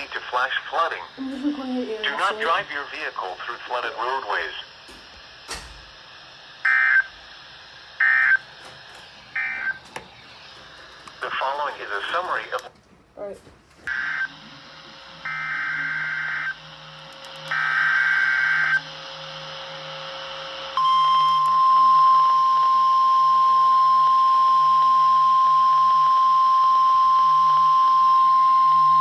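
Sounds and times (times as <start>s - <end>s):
steady warning alarm tone: 0.0s - 12.6s, 13.9s - 29.0s
screechy digital data tones: 8.0s - 8.5s, 9.4s - 10.6s, 15.2s - 16.8s, 17.4s - 19.0s.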